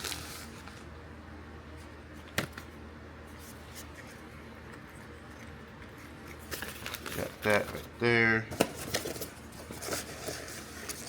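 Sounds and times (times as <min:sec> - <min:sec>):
handling packaging and parts: 0:00.0 - 0:00.9, 0:06.3 - 0:07.9, 0:08.5 - 0:11.0.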